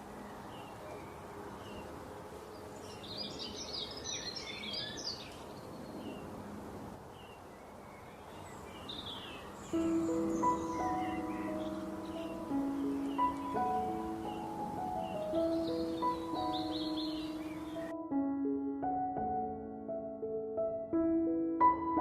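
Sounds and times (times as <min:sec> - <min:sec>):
songbirds chirping: 0:00.0 - 0:18.1
outdoor background hiss: 0:00.0 - 0:22.0
music with held notes: 0:09.7 - 0:22.0.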